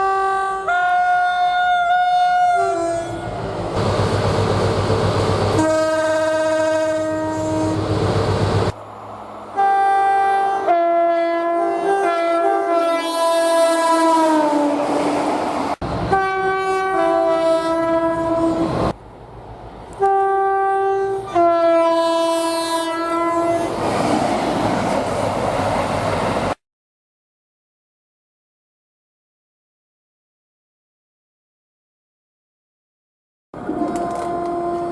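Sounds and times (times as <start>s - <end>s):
train two-tone air horns: 0.0s - 3.4s, 5.5s - 8.0s, 9.6s - 14.9s, 16.1s - 18.8s, 20.0s - 23.7s, 33.8s - 34.9s
train passing: 2.8s - 12.6s, 13.2s - 20.4s, 23.0s - 26.6s, 33.6s - 34.9s.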